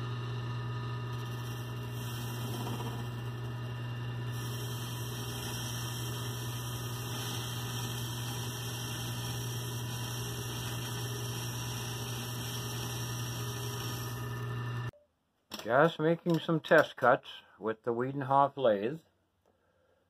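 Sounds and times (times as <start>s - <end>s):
metal lathe running: 0.0s - 14.9s.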